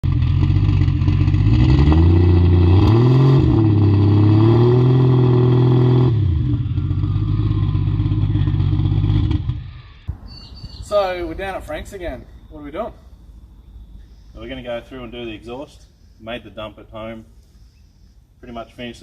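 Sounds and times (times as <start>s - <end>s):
car engine idling and revving: 0.0s - 10.2s.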